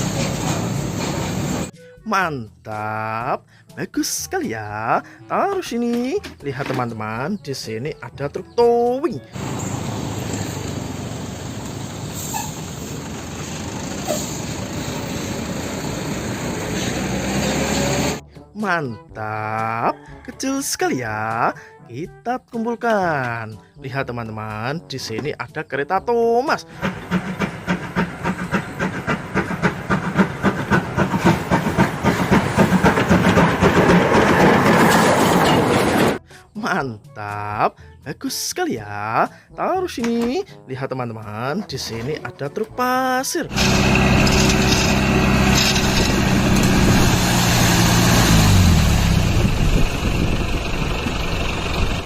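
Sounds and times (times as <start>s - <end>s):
steam hiss: 9.4s - 16.5s
truck engine running: 9.4s - 18.2s, 26.7s - 36.2s, 43.5s - 52.0s
toy steam train chuffing: 26.6s - 35.3s, 43.5s - 47.0s.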